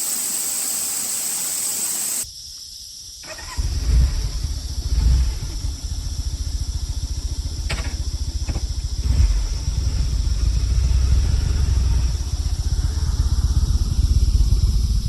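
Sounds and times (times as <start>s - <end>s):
motorcycle engine idling: 4.3s - 15.0s.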